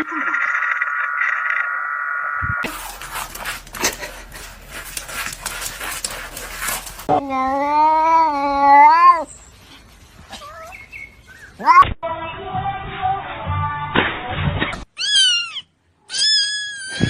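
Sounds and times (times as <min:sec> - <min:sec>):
rustling and handling noise: 0:02.6 - 0:07.2
cat meowing: 0:15.0 - 0:17.0.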